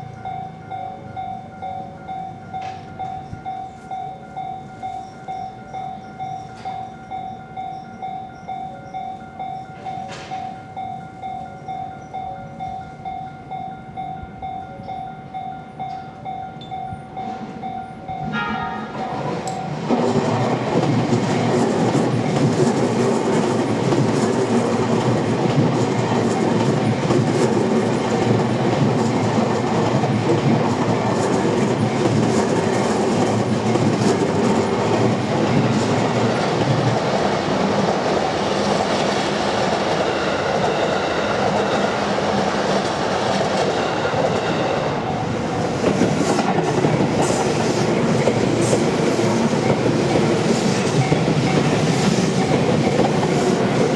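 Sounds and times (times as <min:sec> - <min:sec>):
train passing: 0:00.0 - 0:53.9.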